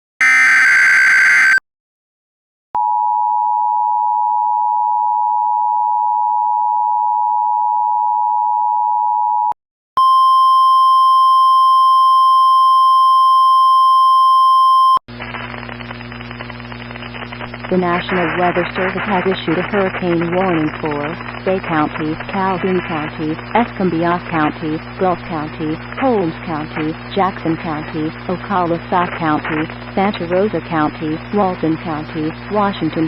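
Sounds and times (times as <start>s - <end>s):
two-tone attention signal: 0.2s - 1.6s
low hum and static: 15.1s - 33.0s.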